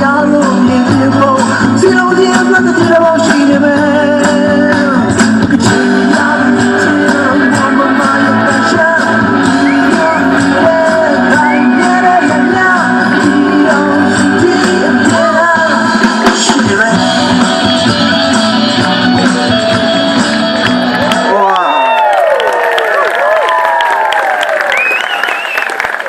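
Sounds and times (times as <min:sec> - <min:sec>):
person singing: 0:00.0 - 0:20.2.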